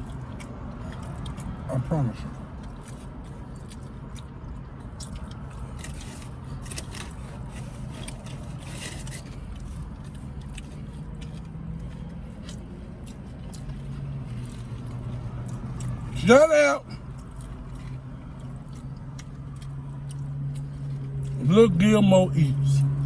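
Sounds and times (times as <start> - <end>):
close-miked chewing: 0.0 - 16.2, 16.9 - 21.4
wet mouth clicks and smacks: 0.1 - 1.7.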